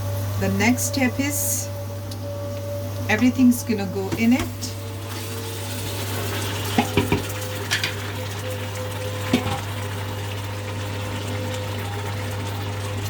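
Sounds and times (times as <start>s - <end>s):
low hum: 0.0s - 13.0s
meat sizzling in hot oil: 4.8s - 13.0s
utensil knocking on pot: 6.8s - 7.3s.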